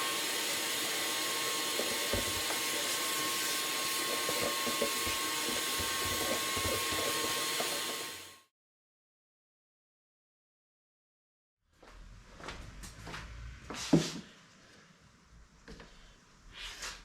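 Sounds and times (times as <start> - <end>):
air blower hissing with whine: 0.0 - 8.5.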